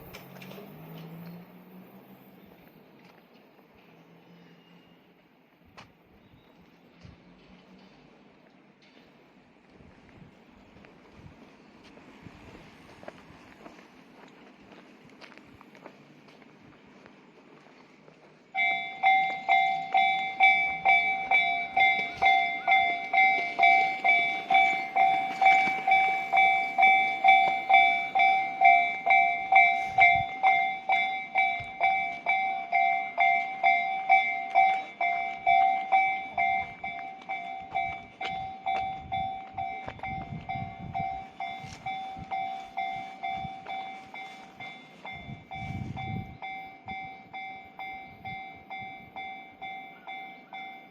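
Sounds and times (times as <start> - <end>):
level crossing warning bell: 0.0 - 3.1, 18.5 - 50.9.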